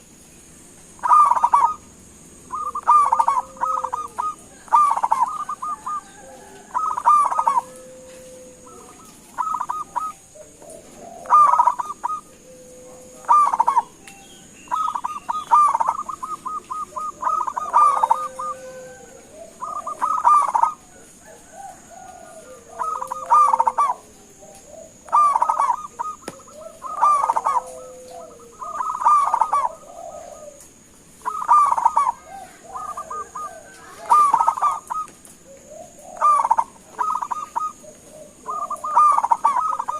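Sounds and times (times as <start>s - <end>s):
dove cooing: 0.9s - 39.9s.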